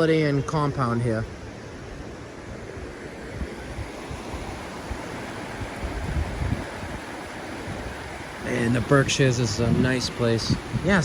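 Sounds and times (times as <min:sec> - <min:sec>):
river water flowing: 0:00.0 - 0:11.0
wind buffeting microphone: 0:00.0 - 0:11.0.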